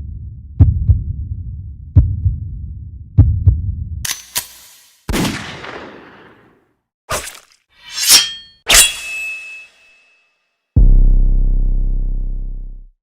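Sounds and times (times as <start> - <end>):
heartbeat thumps: 0.0 - 4.0.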